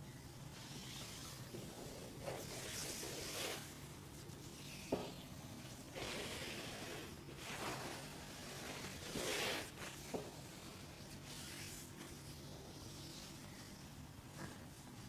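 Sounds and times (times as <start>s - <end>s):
hands rubbing over a leg: 0.6s - 15.0s.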